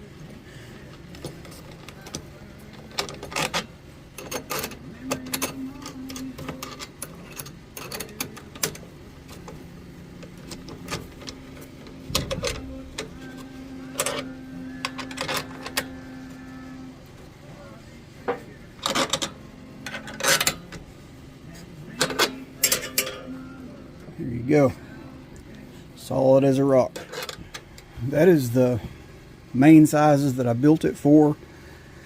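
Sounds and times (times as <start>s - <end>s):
steady low hum: 0.0s - 32.0s
metal clinks and knocks: 22.0s - 23.3s.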